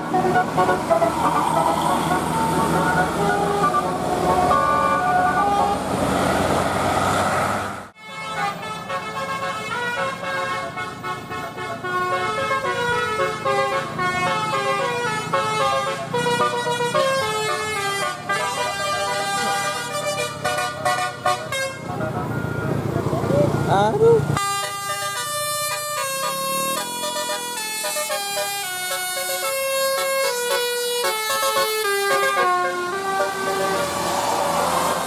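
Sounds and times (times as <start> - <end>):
multi-tone air horn tune: 0.0 - 5.9, 8.0 - 21.9, 24.4 - 34.5.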